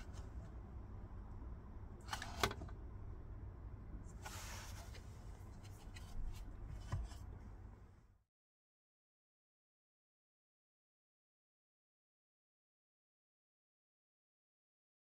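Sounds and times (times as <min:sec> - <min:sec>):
low steady hum: 0:00.0 - 0:08.2.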